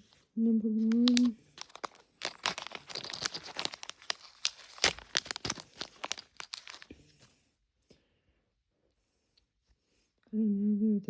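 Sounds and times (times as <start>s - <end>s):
plastic bag crinkling: 0.8s - 7.1s.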